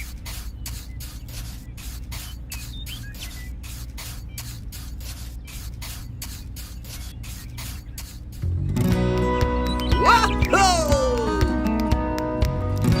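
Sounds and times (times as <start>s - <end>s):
rhythmic short hisses: 0.0s - 8.5s.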